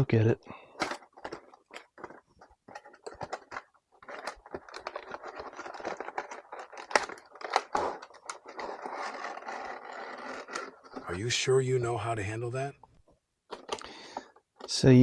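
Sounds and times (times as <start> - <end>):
packaging crinkling: 0.8 - 11.2.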